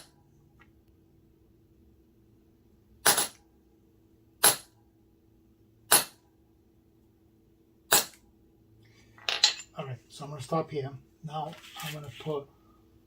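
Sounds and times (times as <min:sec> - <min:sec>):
faint steady hum: 0:00.0 - 0:13.0
mallet striking leather stamp: 0:05.9 - 0:06.2.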